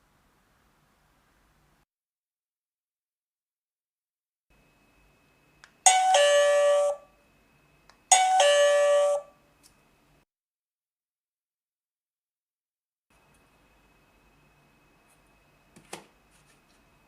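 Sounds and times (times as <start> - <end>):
two-note electronic chime: 5.9 - 7.1, 8.1 - 9.4.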